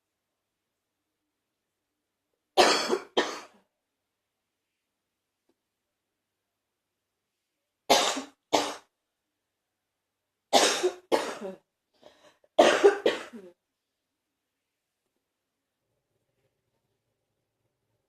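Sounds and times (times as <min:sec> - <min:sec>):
person coughing: 0:02.6 - 0:03.6, 0:07.9 - 0:08.9, 0:10.6 - 0:11.6, 0:12.6 - 0:13.6
faint breath: 0:11.9 - 0:12.6.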